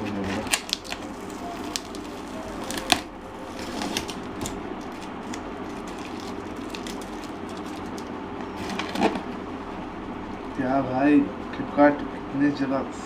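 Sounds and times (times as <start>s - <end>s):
plastic wrapping crinkling: 0.0s - 9.5s
packaging being torn open: 0.3s - 9.3s.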